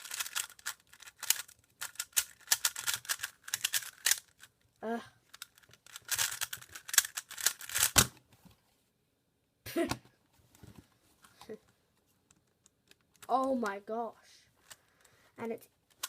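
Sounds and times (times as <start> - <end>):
puzzle cube clicking: 0.0 - 4.5, 5.3 - 8.2.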